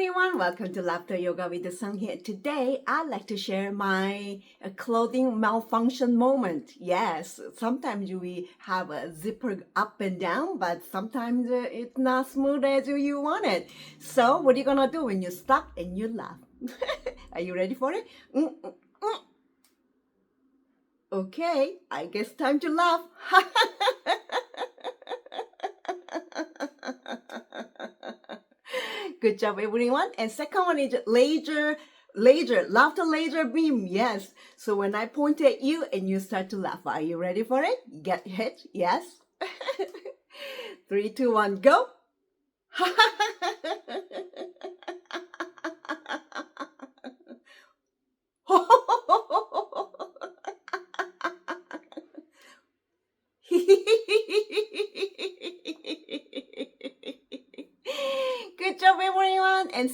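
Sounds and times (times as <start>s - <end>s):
woman laughing: 16.6s - 19.2s, 22.8s - 29.0s, 39.4s - 40.2s, 42.8s - 47.4s, 48.5s - 52.3s, 53.5s - 59.6s.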